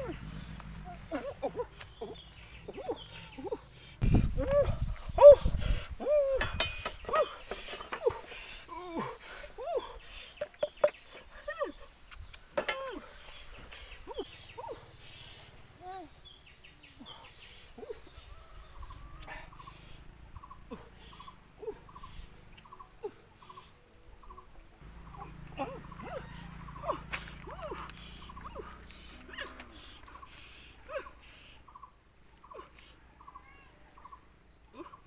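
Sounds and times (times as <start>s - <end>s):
insects trilling: 0.0s - 35.0s
short rising and falling animal calls: 25.0s - 30.3s.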